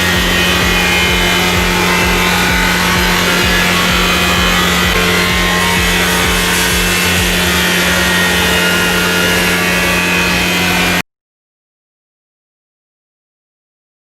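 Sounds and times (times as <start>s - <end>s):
power tool running on wood: 0.0s - 11.0s.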